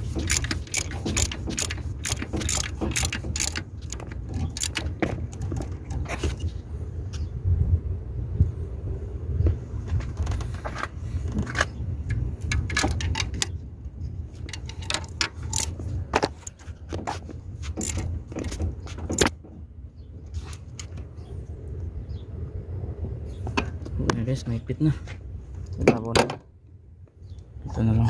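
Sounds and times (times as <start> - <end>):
metal tools clinking: 0.2 - 5.0, 14.4 - 15.8.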